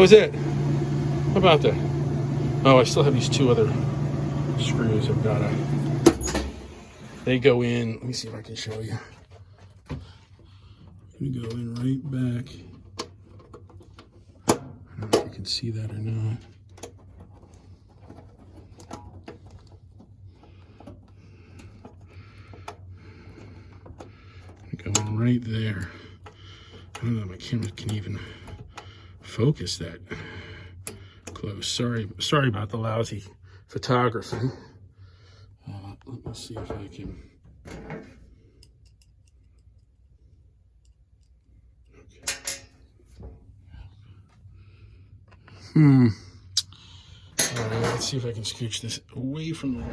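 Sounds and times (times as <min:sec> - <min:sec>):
steady low hum: 0:00.0 - 0:49.9
small metal parts clicking: 0:42.2 - 0:42.7.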